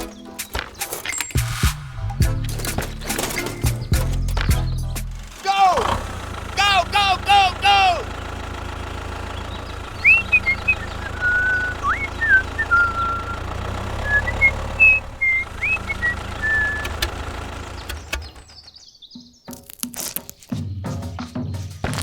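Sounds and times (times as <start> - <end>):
small engine running: 2.5 - 18.7
chirping whistle-like tones: 9.4 - 18.8
clicks: 15.9 - 18.6.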